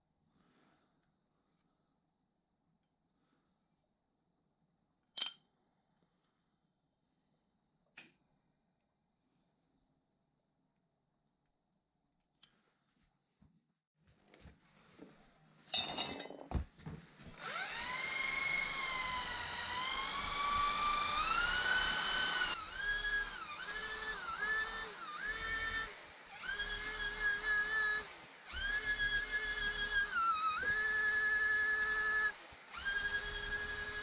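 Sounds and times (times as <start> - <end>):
electric drill whining: 17.4 - 34.0.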